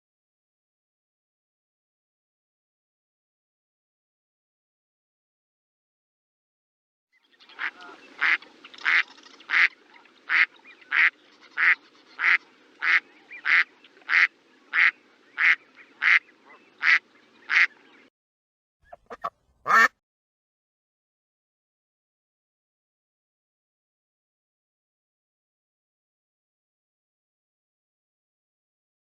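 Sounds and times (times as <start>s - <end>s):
duck quacking: 7.6s - 17.7s, 18.9s - 20.0s.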